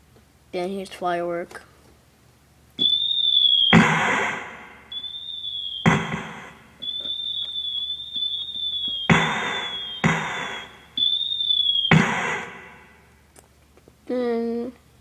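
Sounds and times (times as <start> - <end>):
keyboard firework bang: 2.8 - 12.8
keyboard firework whistle: 2.8 - 13.0.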